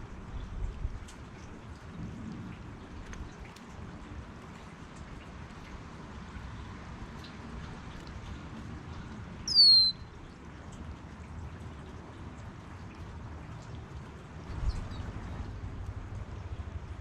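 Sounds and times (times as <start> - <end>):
low outdoor hum: 0.0 - 17.0
bird call sliding downward: 9.5 - 10.0.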